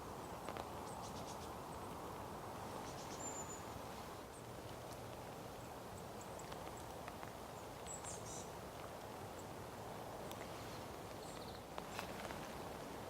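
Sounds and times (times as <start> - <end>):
steady rain: 0.0 - 13.0
small birds chirping: 2.8 - 4.5, 5.6 - 8.6, 10.3 - 12.4.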